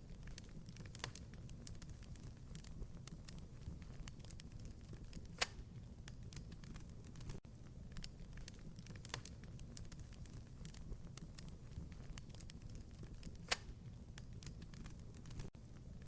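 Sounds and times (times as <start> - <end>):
low burning noise: 0.0 - 16.0
wood fire crackling: 0.0 - 16.0
sharp fire pop: 5.1 - 5.7.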